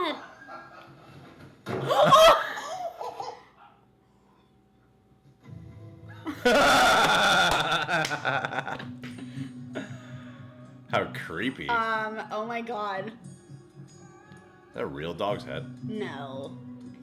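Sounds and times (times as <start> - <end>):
loud burst of laughter: 6.3 - 8.8.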